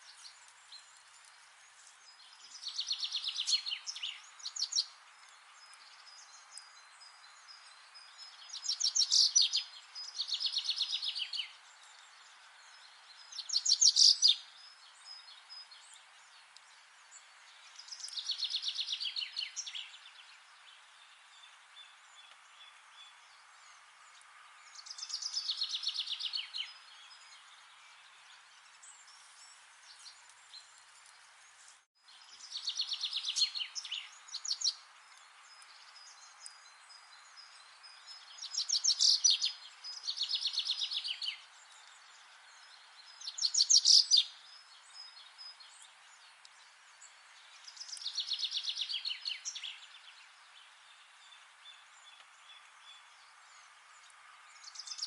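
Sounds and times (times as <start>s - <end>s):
background hiss: 0.0s - 55.0s
songbird trilling: 43.2s - 44.3s.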